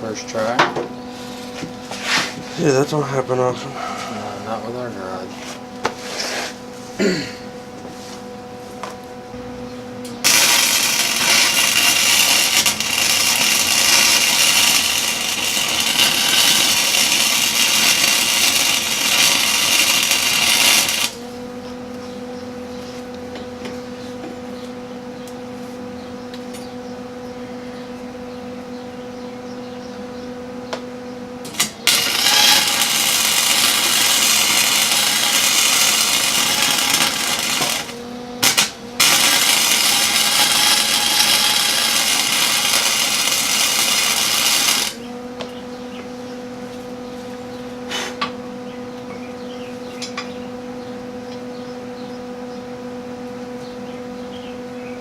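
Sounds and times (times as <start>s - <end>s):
low hum: 6.5s - 43.7s
shop tool working on metal: 10.0s - 21.2s, 31.4s - 45.5s.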